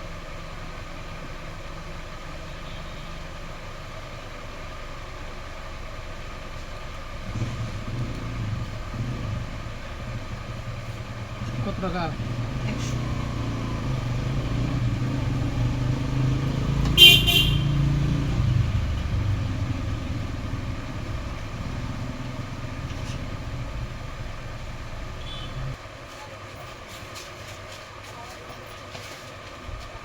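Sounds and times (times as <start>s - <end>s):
vehicle engine running: 0.0s - 25.9s
car horn toot: 2.5s - 3.2s, 16.7s - 18.4s, 25.1s - 25.8s.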